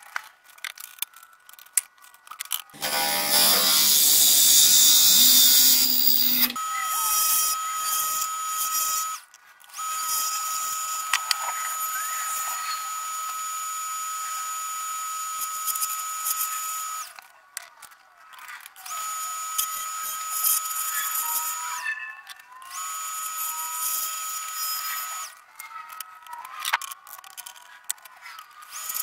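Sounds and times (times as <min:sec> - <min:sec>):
power tool whining: 0:02.8 - 0:17.1, 0:18.8 - 0:21.8, 0:22.7 - 0:25.4, 0:28.6 - 0:29.0.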